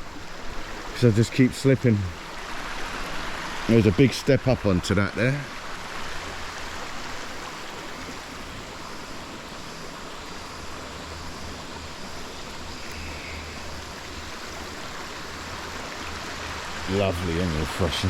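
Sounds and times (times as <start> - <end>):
waterfall pouring over rocks: 0.0 - 18.0.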